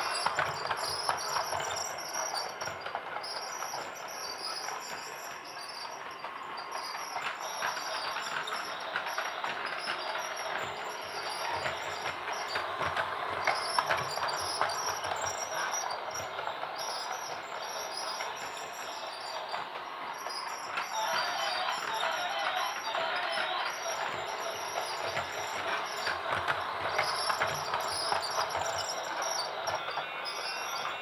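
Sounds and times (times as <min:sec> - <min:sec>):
toy train whirring and clicking: 0:00.0 - 0:31.0.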